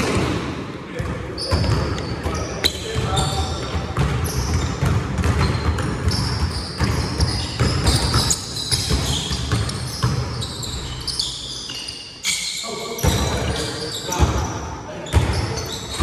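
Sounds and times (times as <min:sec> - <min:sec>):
sneakers squeaking: 0:00.0 - 0:16.0
basketball bouncing on hard court: 0:01.0 - 0:10.5.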